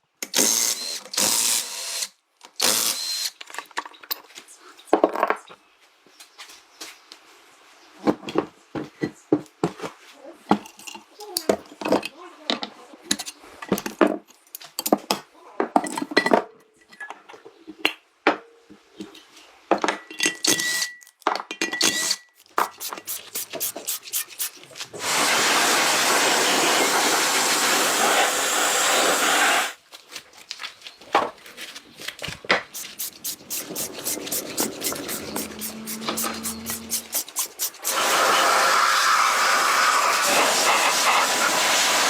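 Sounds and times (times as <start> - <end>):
loud steady hiss: 22.7 - 29.8, 32.7 - 42.0.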